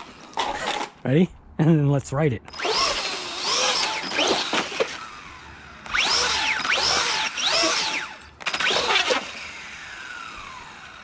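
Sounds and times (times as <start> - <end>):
electric motor whining in bursts: 2.5 - 11.0.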